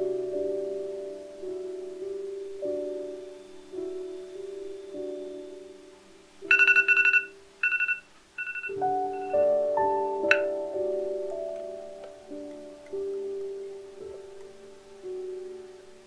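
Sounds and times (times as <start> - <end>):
soft mallet instrument music: 4.2 - 15.9
trilling electronic ringtone: 6.5 - 9.5, 10.2 - 10.5.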